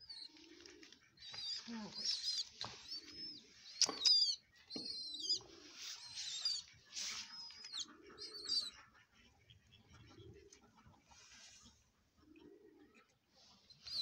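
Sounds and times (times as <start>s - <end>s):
baby pigeon squeaking: 0.0s - 8.9s, 13.6s - 14.0s
pigeon cooing: 0.0s - 8.9s, 12.1s - 14.0s.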